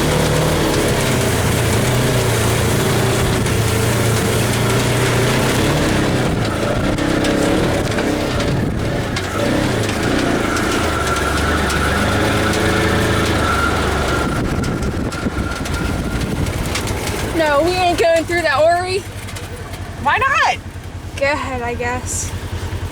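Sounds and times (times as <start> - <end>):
off-road vehicle engine revving: 0.0 - 22.9.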